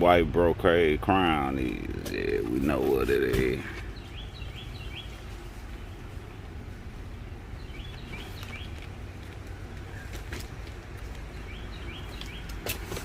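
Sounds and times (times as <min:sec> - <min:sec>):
bird chirping: 0:02.1 - 0:06.5, 0:07.2 - 0:10.4, 0:11.1 - 0:12.9.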